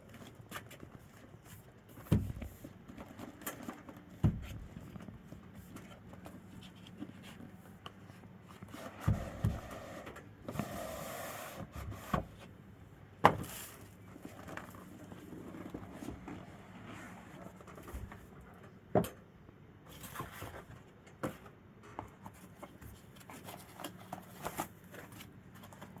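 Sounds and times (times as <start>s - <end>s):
knocks and thumps of handling: 2.0s - 6.4s.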